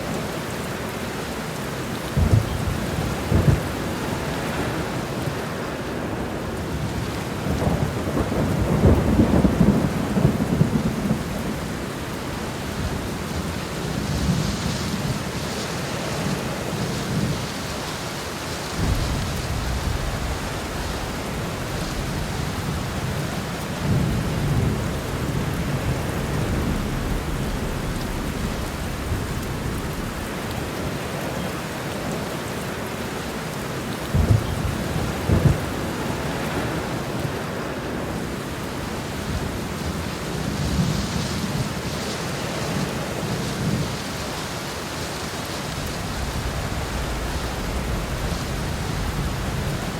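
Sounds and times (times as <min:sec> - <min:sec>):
heavy rain: 0:00.0 - 0:49.9
thunder rolling: 0:02.2 - 0:05.2, 0:06.8 - 0:15.4, 0:18.7 - 0:31.5, 0:34.0 - 0:37.4, 0:45.9 - 0:49.9.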